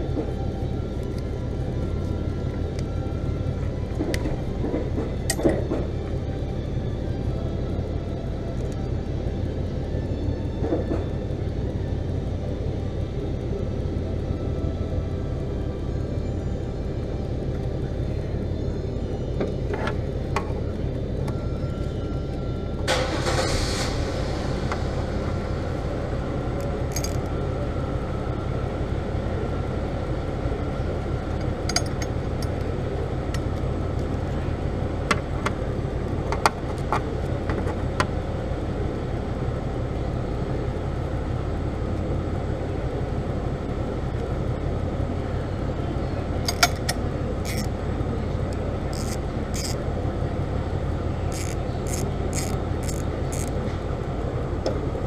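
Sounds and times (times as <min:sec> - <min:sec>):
car engine idling: 0:00.0 - 0:55.0.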